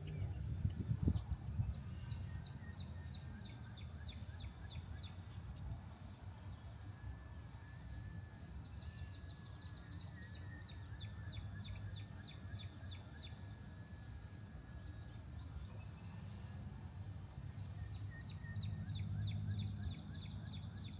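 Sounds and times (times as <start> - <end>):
low outdoor rumble: 0.0 - 10.4.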